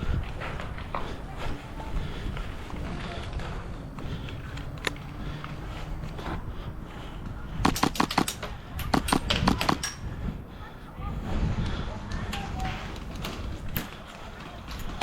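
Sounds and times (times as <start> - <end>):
airsoft guns firing: 7.6 - 10.0.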